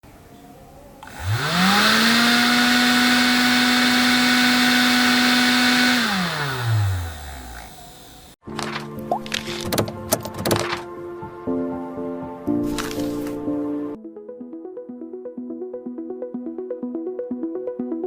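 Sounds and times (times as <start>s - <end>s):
electric fan motor whining: 1.0s - 8.4s.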